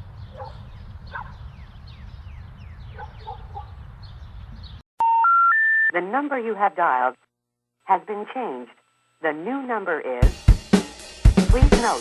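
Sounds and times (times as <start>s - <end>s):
birds calling: 0.0s - 4.8s.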